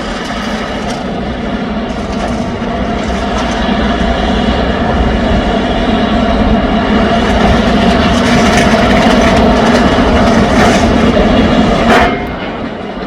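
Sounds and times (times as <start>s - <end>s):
concrete and stone rattling: 7.2s - 12.3s.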